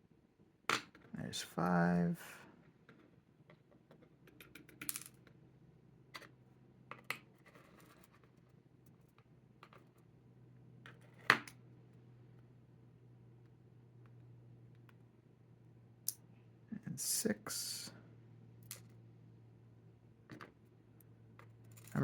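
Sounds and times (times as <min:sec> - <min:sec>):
faint steady hum: 0:04.4 - 0:22.0.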